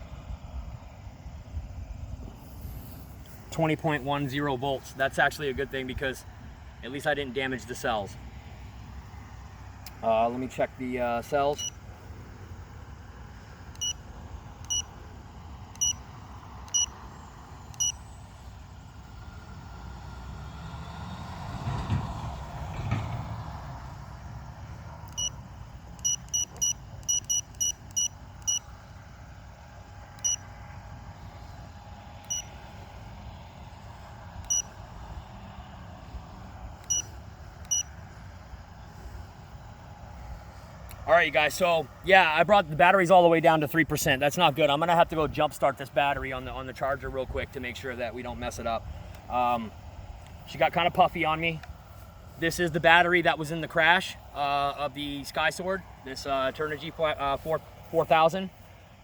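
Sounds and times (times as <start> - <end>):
short high electronic beeps: 26.0 - 28.6.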